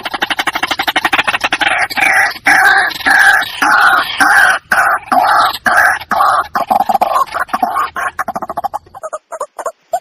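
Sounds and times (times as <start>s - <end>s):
bird calling harsh notes: 0.0s - 10.0s.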